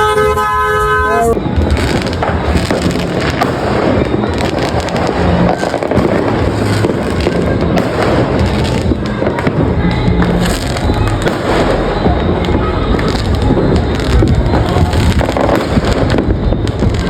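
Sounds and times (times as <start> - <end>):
vehicle horn blast: 0.0 - 1.4
fireworks crackling: 0.0 - 17.0.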